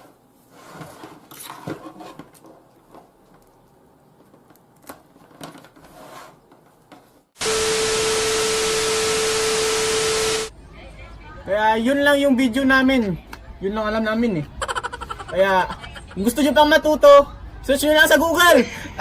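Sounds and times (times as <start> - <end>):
loud hiss with steady tone: 7.4 - 10.5.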